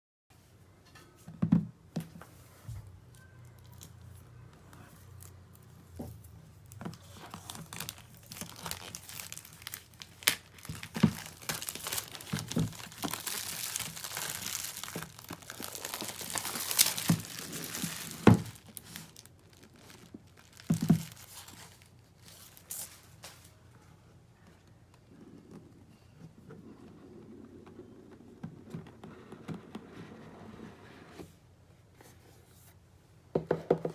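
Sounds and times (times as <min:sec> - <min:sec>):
packaging crinkling and tearing: 0:06.6 - 0:23.5.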